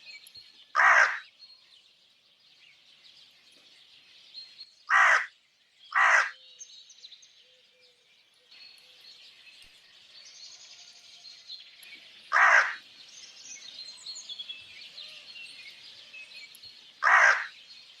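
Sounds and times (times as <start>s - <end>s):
small birds chirping: 0.0s - 18.0s
crow cawing: 0.8s - 1.2s, 4.9s - 5.3s, 5.9s - 6.4s, 12.3s - 12.8s, 17.0s - 17.5s.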